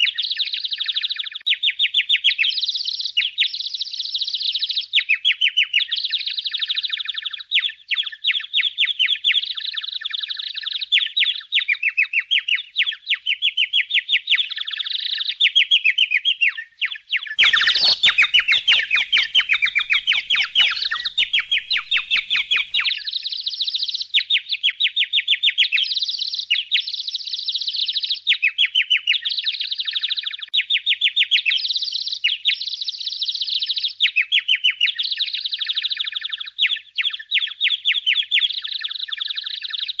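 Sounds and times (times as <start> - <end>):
budgerigars chirping: 16.8 - 23.1.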